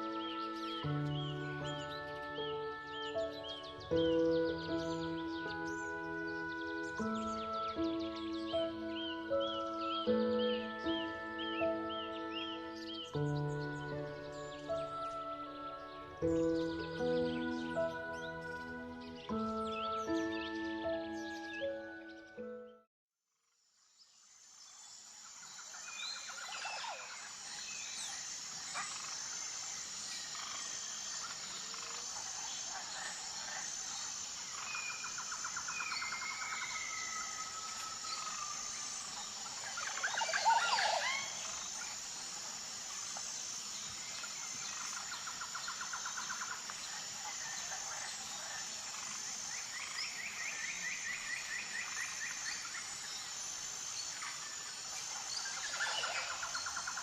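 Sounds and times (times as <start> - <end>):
bird calls and trills: 0.0 - 22.8, 24.5 - 57.0
high-pitched pulsing drone: 26.9 - 57.0.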